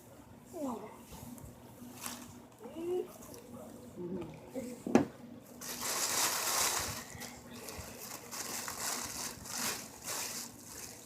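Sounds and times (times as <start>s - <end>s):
package bag rustling and crinkling: 5.6s - 11.0s.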